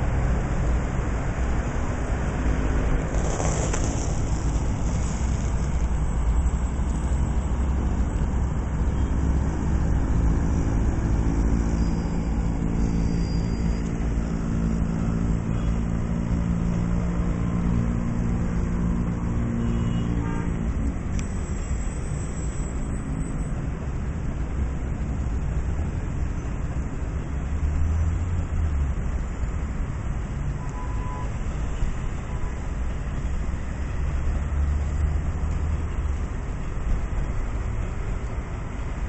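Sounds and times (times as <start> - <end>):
train rumbling: 2.6 - 8.1
droning train horn: 19.6 - 20.6.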